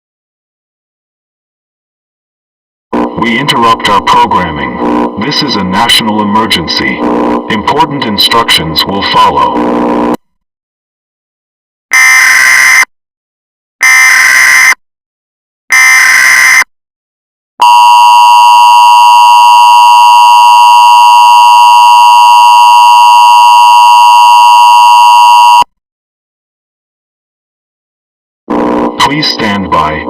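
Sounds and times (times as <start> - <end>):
two-tone attention signal: 17.6 - 25.7.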